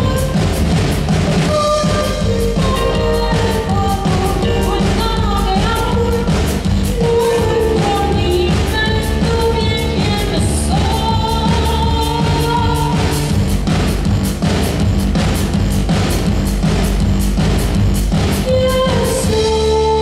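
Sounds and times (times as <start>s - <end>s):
woman singing: 0.0s - 0.5s, 1.5s - 13.3s, 18.4s - 20.0s
live band playing: 0.0s - 20.0s.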